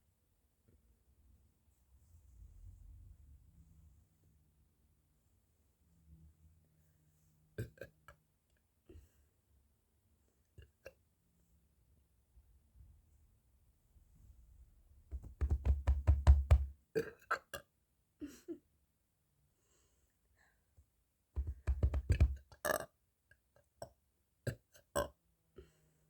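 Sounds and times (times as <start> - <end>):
person burping: 7.6 - 8.0, 17.0 - 17.7, 22.6 - 22.9, 24.5 - 25.2.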